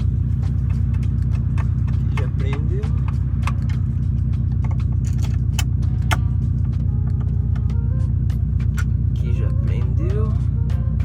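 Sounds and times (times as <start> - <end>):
car engine idling: 0.0 - 11.0
sharp clicks and small knocks: 0.6 - 3.8.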